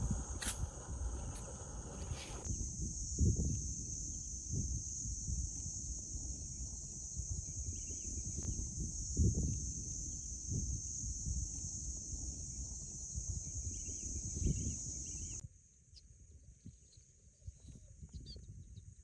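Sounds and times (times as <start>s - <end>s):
low rumbling noise: 0.0s - 2.5s
high insect drone: 0.0s - 15.4s.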